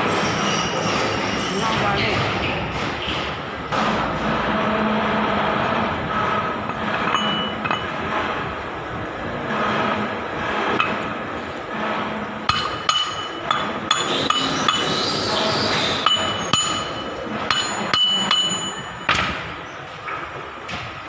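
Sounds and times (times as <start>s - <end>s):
hammer tapping on metal: 12.5s - 14.9s, 16.0s - 19.3s.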